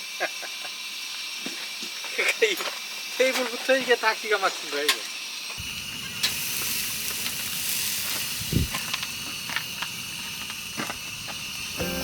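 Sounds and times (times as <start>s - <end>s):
food hissing on camp stove: 0.0s - 12.0s
small crackles and clicks: 6.2s - 11.6s.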